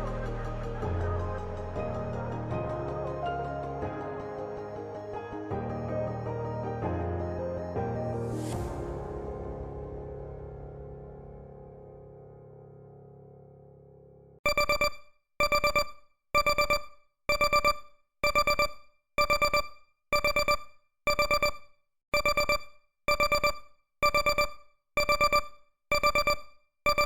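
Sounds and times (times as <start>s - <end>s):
background song: 0.0s - 11.8s
timer alarm beeps: 4.2s - 8.3s, 14.4s - 27.0s.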